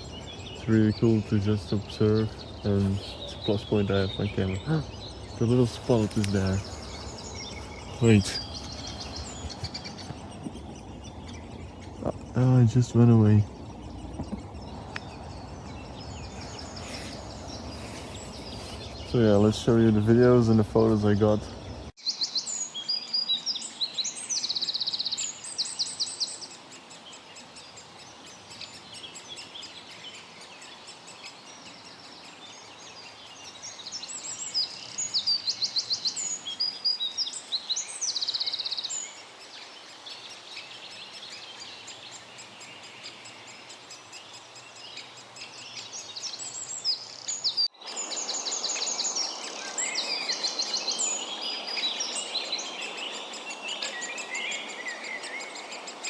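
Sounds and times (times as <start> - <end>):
songbird singing trilled phrases: 0.0 - 26.5, 40.0 - 56.0.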